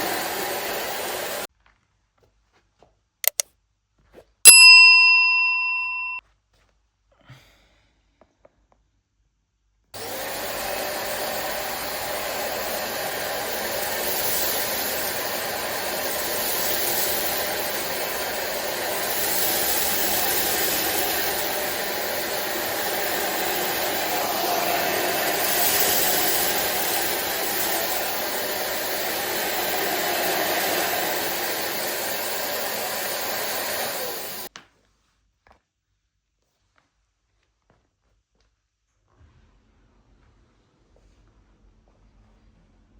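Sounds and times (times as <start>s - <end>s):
vacuum cleaner running: 0.0s - 1.5s, 10.0s - 34.5s
bell-like chime: 4.5s - 6.2s.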